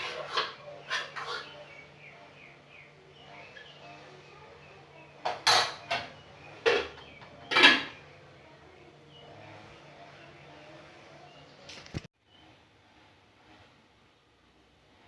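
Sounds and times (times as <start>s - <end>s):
dishes and cutlery clattering: 0.0s - 1.7s, 5.2s - 8.0s.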